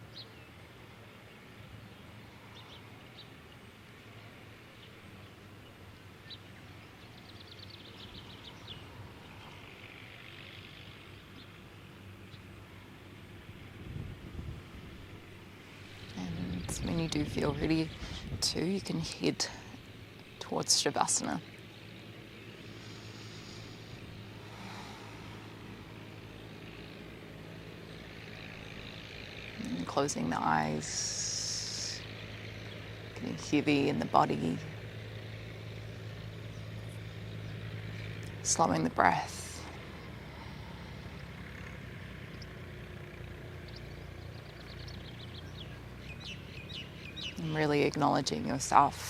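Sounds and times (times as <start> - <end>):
steady low hum: 0.0 - 49.0
soft hiss: 21.6 - 29.0.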